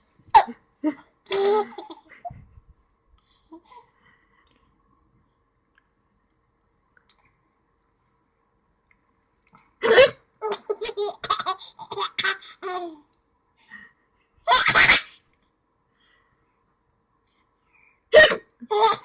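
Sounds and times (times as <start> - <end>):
loud hiccups: 9.8 - 10.2.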